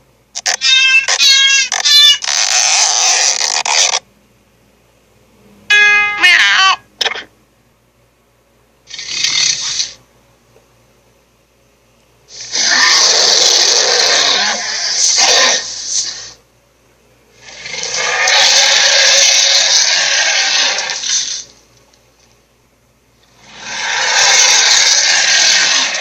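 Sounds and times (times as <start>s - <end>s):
rough growling roars: 17.4s - 21.2s, 23.4s - 26.0s.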